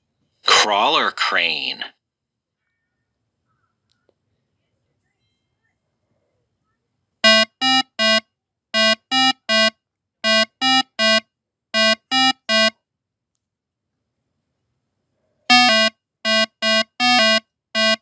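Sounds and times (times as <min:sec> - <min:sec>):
electronic alarm buzzer beeping: 0:07.2 - 0:08.2, 0:08.8 - 0:11.2, 0:11.8 - 0:12.7, 0:15.5 - 0:18.0.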